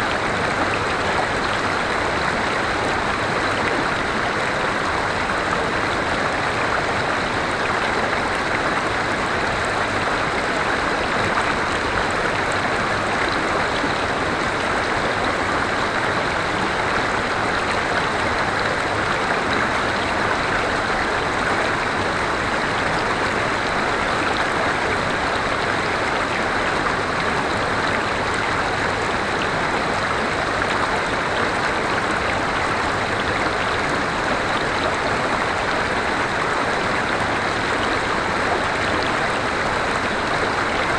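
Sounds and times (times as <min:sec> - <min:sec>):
river flowing over rocks: 0:00.0 - 0:40.9.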